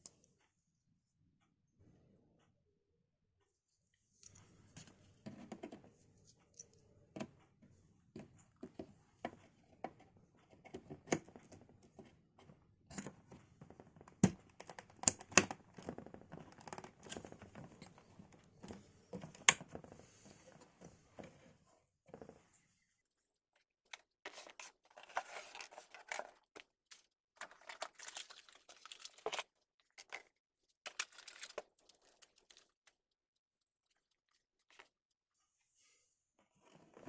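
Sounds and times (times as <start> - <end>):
packaging rustling and crinkling: 24.3 - 26.7, 27.4 - 30.3, 30.9 - 32.8.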